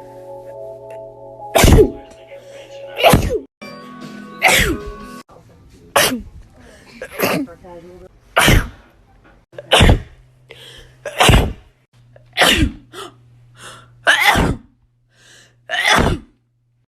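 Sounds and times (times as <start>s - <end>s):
person sneezing: 1.6s - 2.0s, 3.0s - 3.5s, 4.4s - 4.8s, 8.4s - 8.9s, 9.6s - 10.2s, 11.0s - 11.6s, 12.4s - 12.9s, 14.0s - 14.7s, 15.7s - 16.4s
faint breaths: 6.4s - 7.1s, 10.5s - 11.0s, 15.1s - 15.6s.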